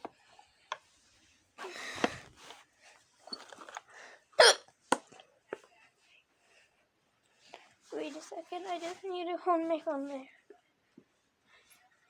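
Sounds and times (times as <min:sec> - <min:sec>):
girl hiccuping: 0:04.4 - 0:04.6.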